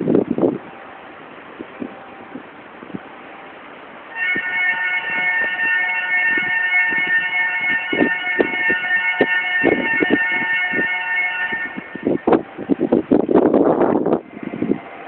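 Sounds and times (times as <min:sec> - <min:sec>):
level crossing warning bell: 0:04.1 - 0:12.9.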